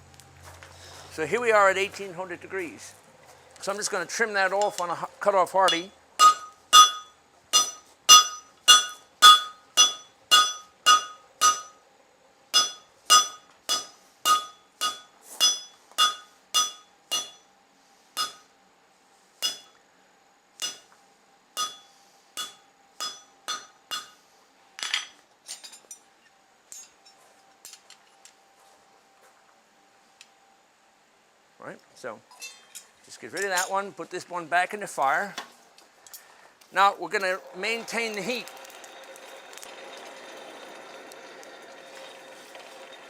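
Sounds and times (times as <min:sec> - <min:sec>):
faint steady hum: 0:00.0 - 0:43.0
hammer striking steel on anvil: 0:05.6 - 0:11.8, 0:12.5 - 0:17.5, 0:18.2 - 0:18.5, 0:19.4 - 0:19.8, 0:20.6 - 0:21.0, 0:21.6 - 0:24.2.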